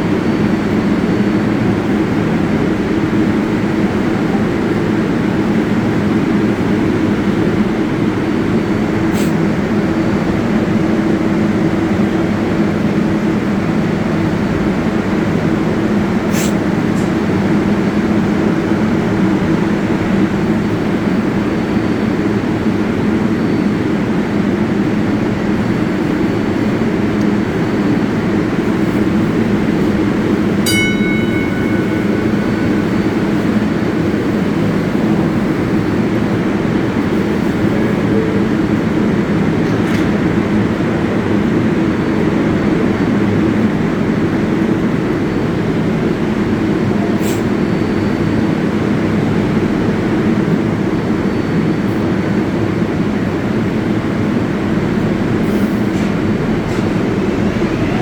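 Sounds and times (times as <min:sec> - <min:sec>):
subway train rumble and hum: 0:00.0 - 0:58.0
brief ringing tone: 0:30.7 - 0:34.5.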